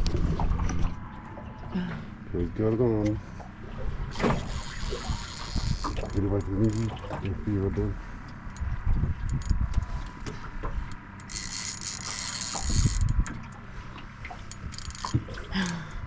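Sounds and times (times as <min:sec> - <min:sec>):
fishing reel ratchet clicking: 0:04.1 - 0:07.0, 0:08.5 - 0:09.6, 0:10.9 - 0:13.4, 0:14.4 - 0:15.8
low rumbling thumps: 0:05.6 - 0:10.9.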